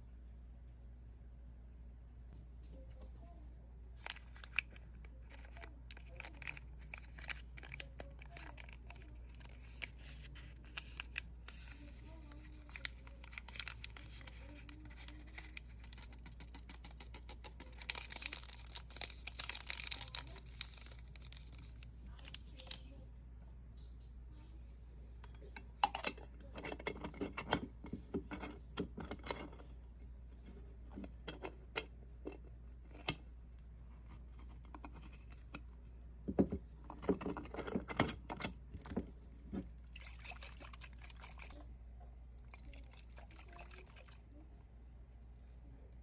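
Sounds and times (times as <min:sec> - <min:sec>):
liquid pouring: 0:39.8 - 0:41.7, 0:42.4 - 0:44.3.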